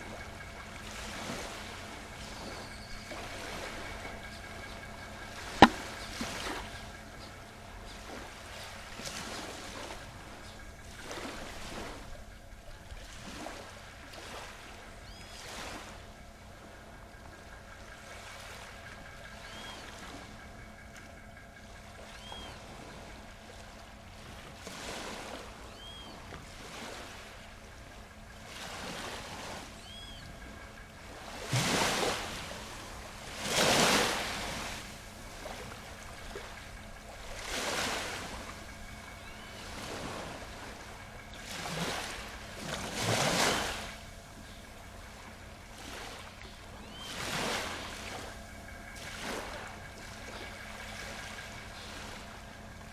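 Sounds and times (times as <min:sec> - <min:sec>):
ocean waves breaking: 0:00.0 - 0:16.7, 0:21.8 - 0:52.9.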